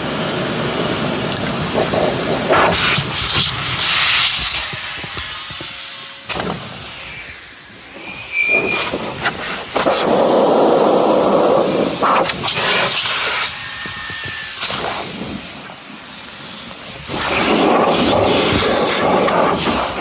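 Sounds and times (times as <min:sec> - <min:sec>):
air hissing from raft inflator: 0:00.0 - 0:20.0.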